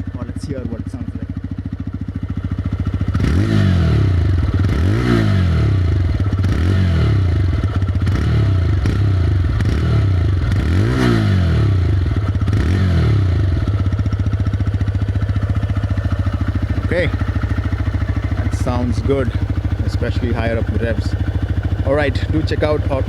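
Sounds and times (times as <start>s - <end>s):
motorcycle engine revving: 0.0s - 23.0s.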